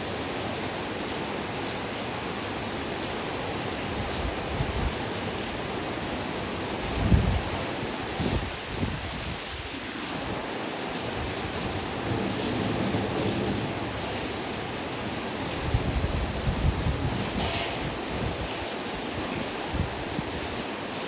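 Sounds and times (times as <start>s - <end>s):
heavy rain falling: 0.0s - 21.0s
low gusty rumbles: 6.9s - 7.6s, 15.6s - 18.5s.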